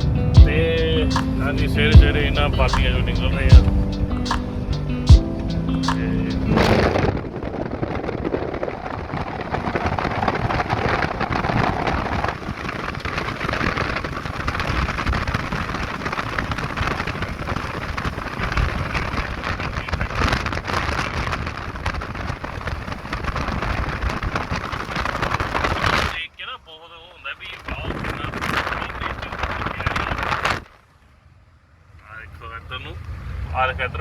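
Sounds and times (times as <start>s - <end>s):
truck engine: 0.0s - 12.1s
tyre and wind noise: 0.0s - 26.2s, 27.4s - 31.0s.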